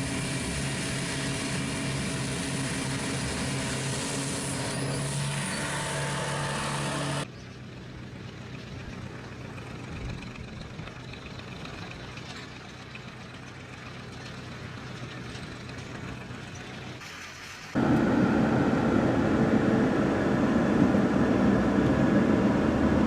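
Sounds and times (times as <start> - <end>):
rough machine running noise: 0.0 - 17.0, 17.7 - 23.0
engine humming: 0.0 - 23.0.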